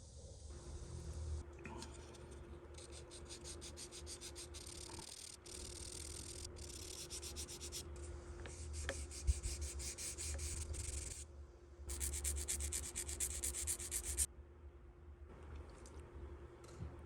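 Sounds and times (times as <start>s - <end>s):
sanding plastic strokes: 2.8s - 7.8s, 8.7s - 11.2s, 11.9s - 14.3s.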